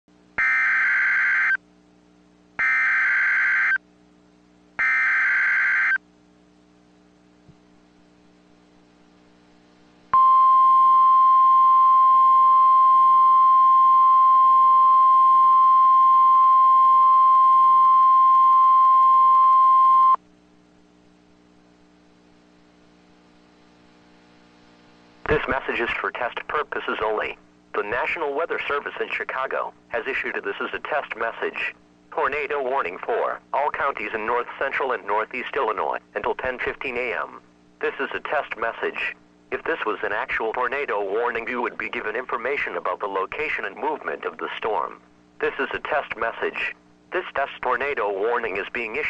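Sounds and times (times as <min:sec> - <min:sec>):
steady warning alarm tone: 0:00.4 - 0:01.6, 0:02.6 - 0:03.8, 0:04.8 - 0:06.0.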